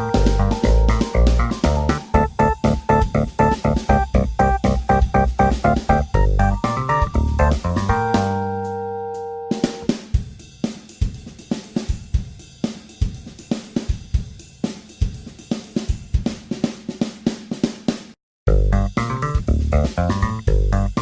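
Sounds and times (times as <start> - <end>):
full band playing: 0.0 - 9.9
held chord: 0.0 - 9.9
drum kit beat: 0.0 - 21.0.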